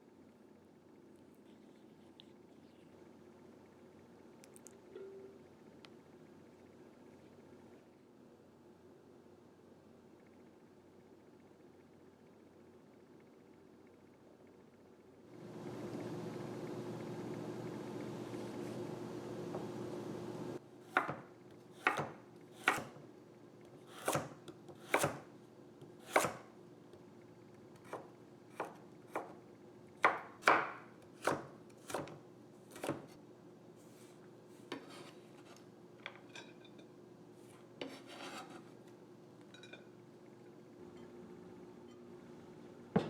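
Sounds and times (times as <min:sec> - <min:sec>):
faint steady hum: 0:00.0 - 0:43.0
knife chopping on cutting board: 0:20.8 - 0:23.0, 0:23.9 - 0:25.3, 0:26.0 - 0:26.5, 0:27.8 - 0:29.4, 0:30.0 - 0:33.2, 0:37.8 - 0:38.6.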